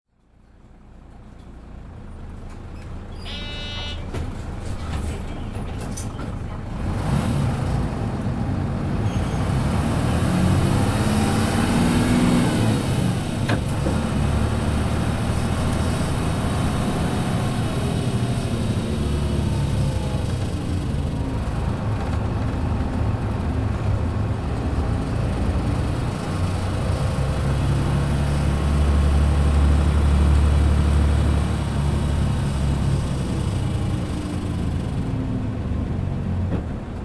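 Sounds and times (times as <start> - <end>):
bus engine running: 0.1 - 37.0
short electronic tone: 3.1 - 4.1.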